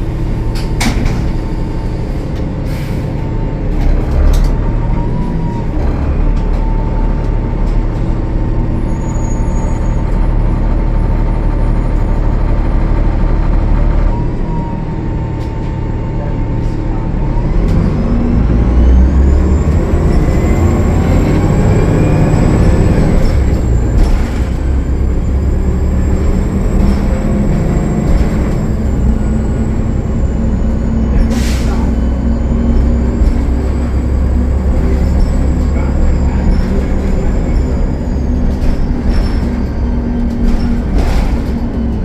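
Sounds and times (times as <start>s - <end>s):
diesel bus engine running: 0.0s - 42.0s.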